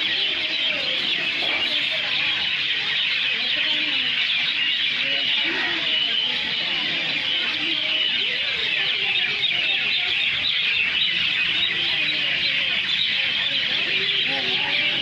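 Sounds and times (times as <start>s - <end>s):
small birds chirping: 0.0s - 15.0s.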